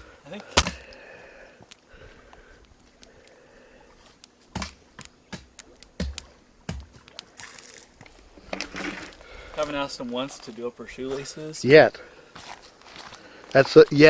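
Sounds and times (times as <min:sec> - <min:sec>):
wood being chopped: 0:00.4 - 0:01.0, 0:04.5 - 0:07.6.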